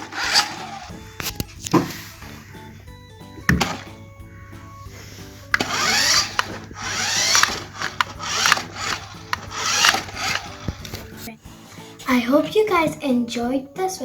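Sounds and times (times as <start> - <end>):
toy car motor whirring: 0.0 - 0.9, 4.9 - 11.2
background music: 0.0 - 14.0
clicks: 5.5 - 11.3.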